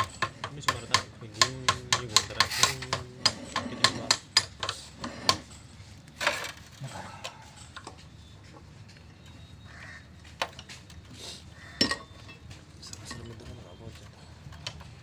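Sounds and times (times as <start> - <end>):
metal tools clinking and knocking: 0.0 - 8.6, 11.8 - 15.0.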